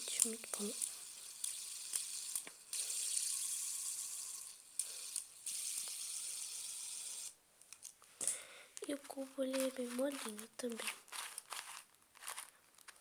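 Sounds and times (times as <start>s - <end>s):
fidget spinner whirring: 0.0s - 7.4s.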